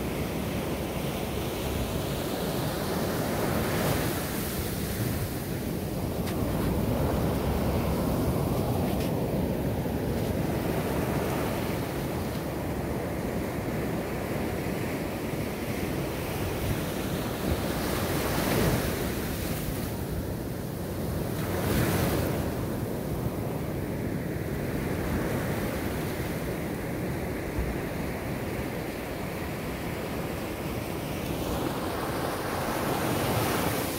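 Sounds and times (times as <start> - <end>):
ocean surf breaking: 0.0 - 13.6.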